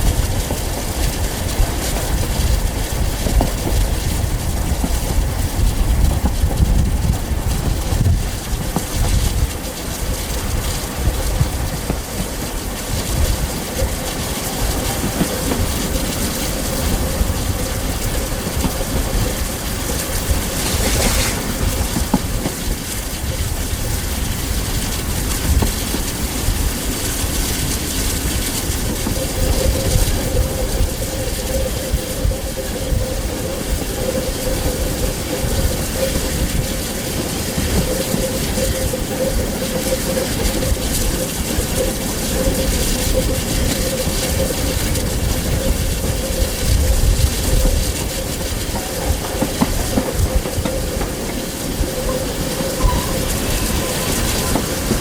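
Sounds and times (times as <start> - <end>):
train wheels clicking on track: 0.0 - 55.0
faint ringing tone: 51.8 - 55.0.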